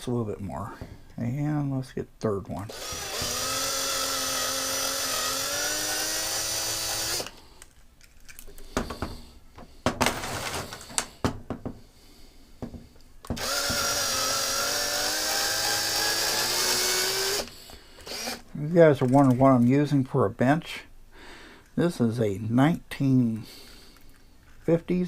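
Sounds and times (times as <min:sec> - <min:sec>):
small power drill drilling: 0:02.7 - 0:07.4, 0:13.3 - 0:18.4
sharp clicks and knocks: 0:07.6 - 0:11.8.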